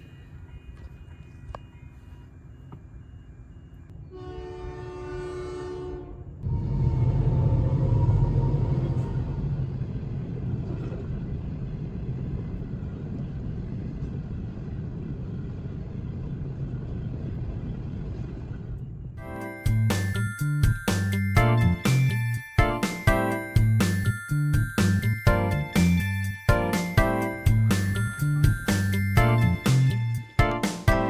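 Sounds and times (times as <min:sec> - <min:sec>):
heavy vehicle passing: 0:06.4 - 0:10.7.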